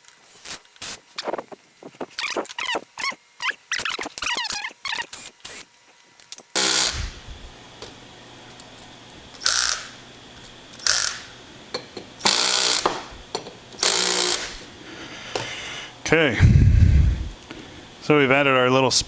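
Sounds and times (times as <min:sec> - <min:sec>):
hand ratchet ratcheting: 0:09.4 - 0:10.0, 0:10.8 - 0:11.4, 0:12.2 - 0:14.6.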